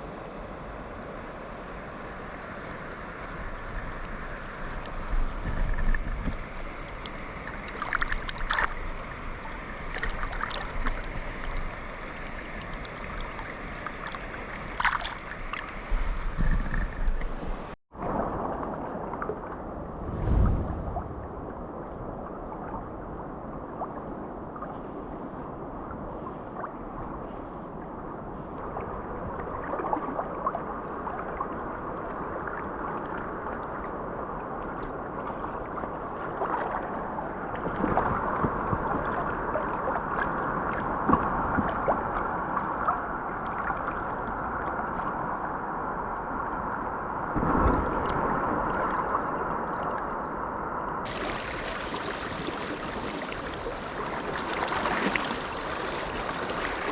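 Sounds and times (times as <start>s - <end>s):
stream water gurgling: 2.8s - 17.7s, 51.1s - 56.9s.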